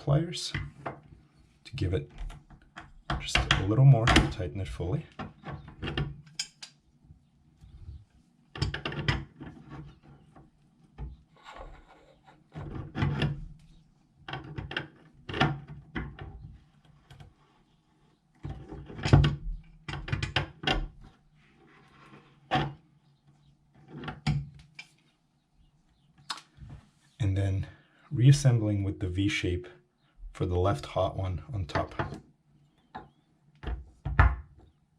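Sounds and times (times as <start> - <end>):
clicks and scrapes of metal tools: 6.2 - 6.8.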